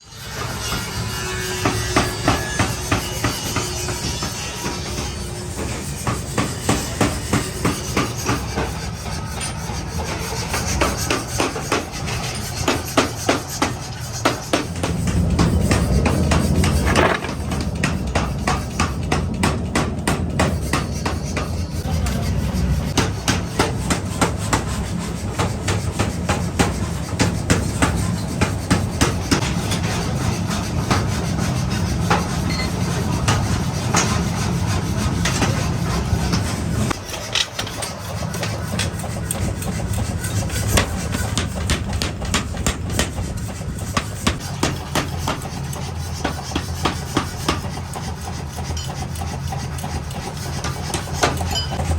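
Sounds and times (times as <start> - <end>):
hammer striking metal: 0.7 - 22.3, 50.6 - 51.9.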